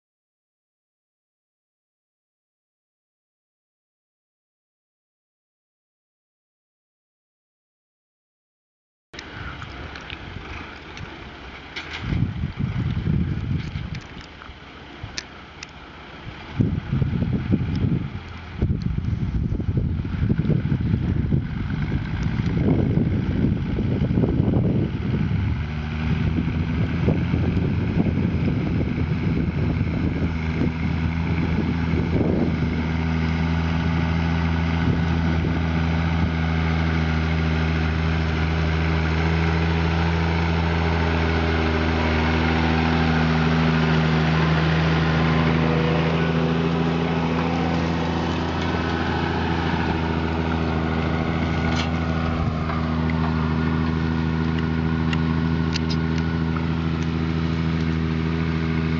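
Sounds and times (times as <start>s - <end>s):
diesel engine running: 9.2s - 58.9s
rough noise: 36.8s - 58.9s.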